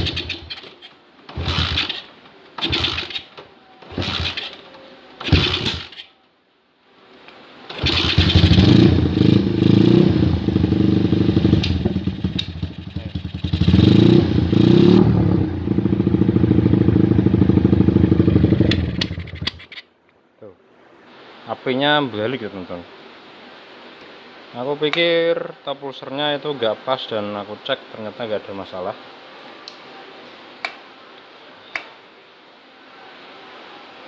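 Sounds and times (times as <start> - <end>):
motorcycle engine revving unevenly: 1.3 - 3.2, 7.7 - 19.5.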